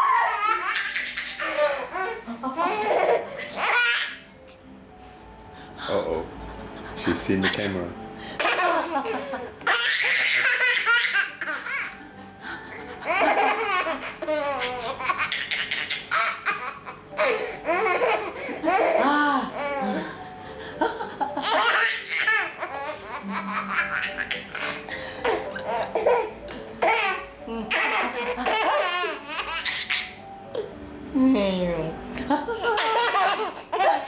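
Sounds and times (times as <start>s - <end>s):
baby laughing: 0.0s - 4.2s, 8.4s - 12.1s, 12.8s - 20.1s, 21.4s - 30.7s, 32.5s - 34.0s.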